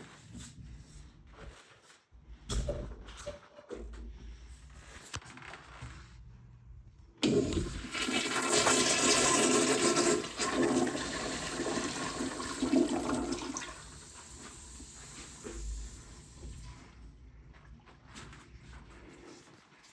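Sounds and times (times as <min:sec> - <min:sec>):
toilet flushing: 0:07.2 - 0:16.9.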